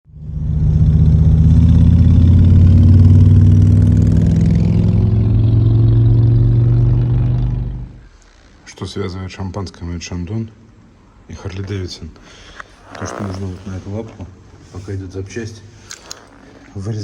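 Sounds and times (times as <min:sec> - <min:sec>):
motorcycle engine running: 0:00.1 - 0:07.9.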